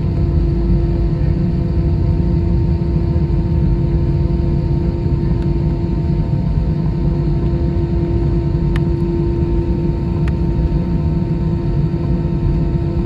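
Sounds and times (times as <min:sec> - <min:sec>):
airplane low rumble: 0:00.0 - 0:13.0.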